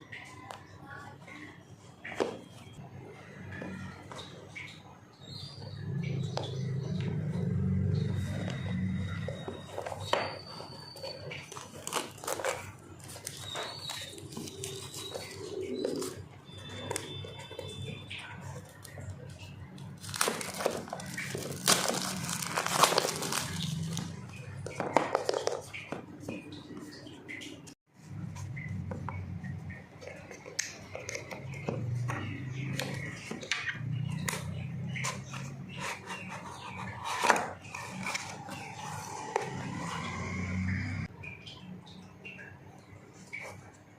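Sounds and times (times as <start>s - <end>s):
packaging rustling and clicking: 11.0s - 16.2s, 19.9s - 25.8s.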